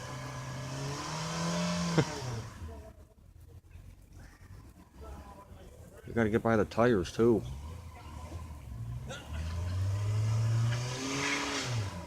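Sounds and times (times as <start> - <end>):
car engine revving: 0.0 - 2.9, 7.1 - 12.0.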